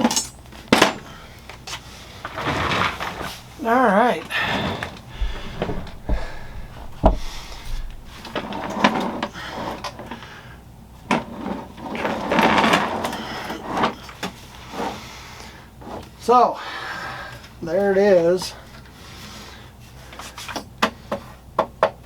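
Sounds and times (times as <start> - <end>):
scraping and rustling: 4.4 - 13.0
knocks and bumps: 5.1 - 10.7.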